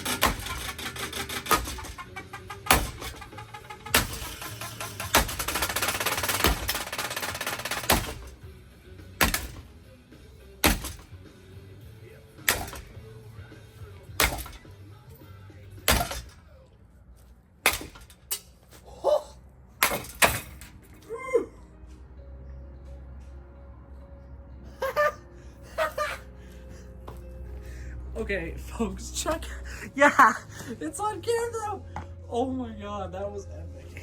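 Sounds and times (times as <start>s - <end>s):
loud dense rattling: 0.0s - 8.4s
sharp metal clanks: 0.0s - 8.4s, 9.2s - 9.7s, 10.6s - 11.2s, 12.4s - 13.0s, 14.2s - 14.7s, 15.8s - 16.4s, 17.6s - 18.7s, 19.8s - 21.0s.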